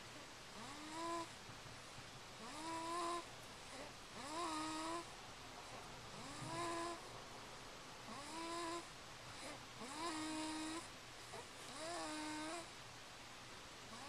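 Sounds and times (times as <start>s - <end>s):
quiet breaths: 0.0s - 14.0s
pitched tonal snores: 0.6s - 1.3s, 2.4s - 5.1s, 6.2s - 7.0s, 8.1s - 12.7s.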